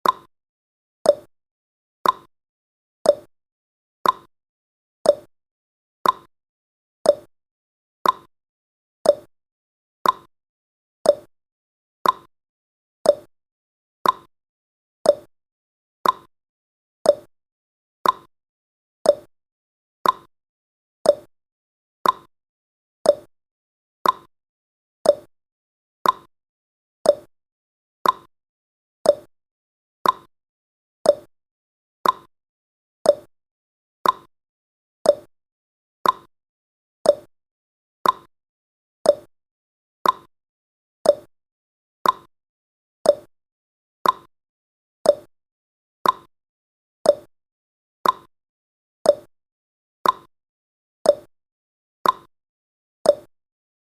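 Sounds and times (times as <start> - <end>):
clock-like timer ticking: 0.0 - 0.3, 2.0 - 2.3, 4.0 - 4.3, 5.1 - 5.3, 6.0 - 6.3, 7.1 - 7.3, 8.0 - 8.3, 9.1 - 9.3, 10.0 - 10.3, 11.1 - 11.3, 12.0 - 12.3, 13.1 - 13.3, 14.0 - 14.3, 15.1 - 15.3, 16.0 - 16.3, 17.1 - 17.3, 18.0 - 18.3, 19.1 - 19.3, 20.0 - 20.3, 21.1 - 21.3, 22.0 - 22.3, 23.1 - 23.3, 24.0 - 24.3, 25.1 - 25.3, 26.0 - 26.3, 27.1 - 27.3, 28.0 - 28.3, 29.1 - 29.3, 30.0 - 30.3, 31.1 - 31.3, 32.0 - 32.3, 33.1 - 33.3, 34.0 - 34.3, 35.1 - 35.3, 36.0 - 36.3, 37.1 - 37.3, 38.0 - 38.3, 39.1 - 39.3, 40.0 - 40.3, 41.0 - 41.3, 42.0 - 42.3, 43.1 - 43.3, 44.0 - 44.3, 45.1 - 45.3, 46.0 - 46.3, 47.1 - 47.3, 48.0 - 48.3, 49.1 - 49.3, 50.0 - 50.3, 51.1 - 51.3, 52.0 - 52.3, 53.1 - 53.3.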